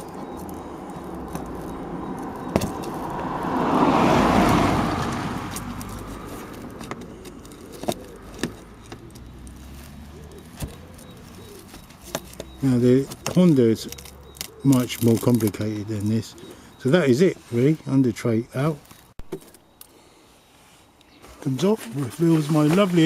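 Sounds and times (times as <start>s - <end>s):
car passing by: 1.1s - 6.8s.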